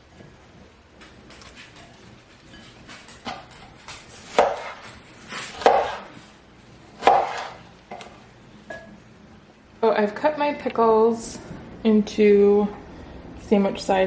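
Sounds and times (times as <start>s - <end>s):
knife slicing on cutting board: 4.3s - 6.2s, 7.0s - 7.6s.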